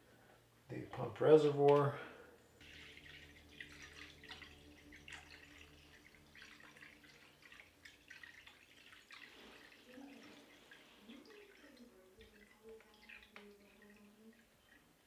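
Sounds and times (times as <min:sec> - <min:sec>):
low steady hum: 0:00.0 - 0:15.0
liquid dripping and trickling: 0:02.6 - 0:15.0.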